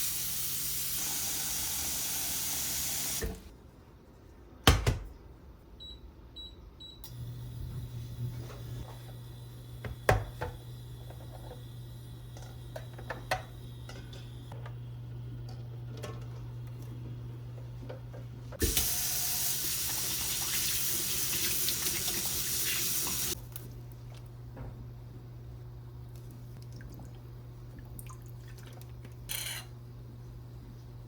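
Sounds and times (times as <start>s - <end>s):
water running from a tap: 0.0s - 3.4s, 18.6s - 23.4s.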